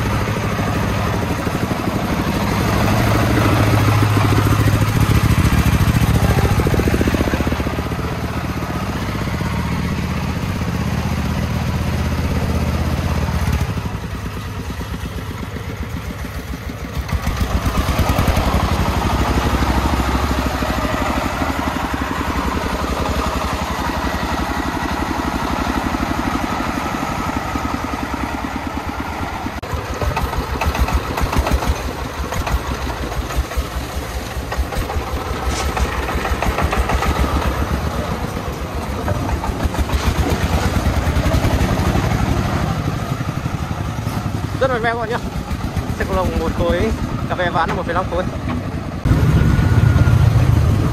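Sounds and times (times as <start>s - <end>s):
diesel engine chugging: 0.0s - 50.9s.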